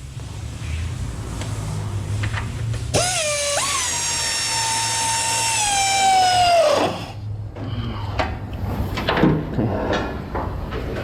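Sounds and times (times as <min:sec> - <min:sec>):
power wrench motor whine: 0:02.9 - 0:07.2.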